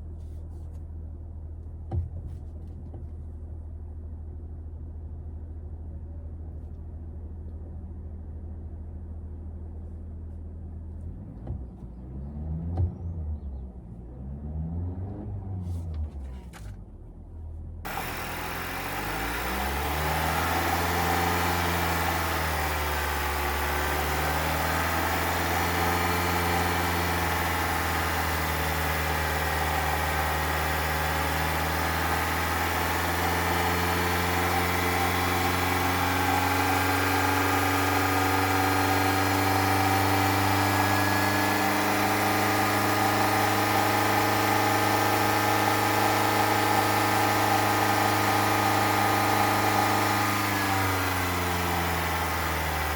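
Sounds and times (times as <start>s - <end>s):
faint abnormal engine noise: 0.0s - 52.9s
car engine running: 17.9s - 52.9s.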